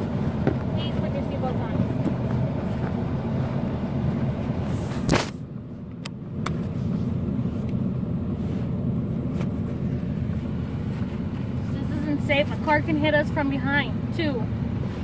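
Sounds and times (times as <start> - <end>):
highway traffic rumble: 0.0 - 15.0
sharp thump: 5.0 - 5.4.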